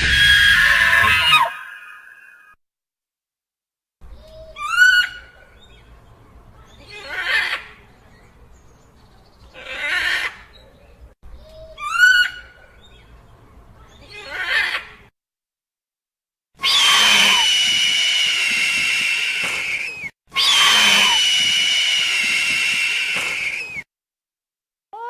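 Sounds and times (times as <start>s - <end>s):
dinosaur shrill whinny-like call: 0.0s - 2.5s, 16.6s - 23.8s.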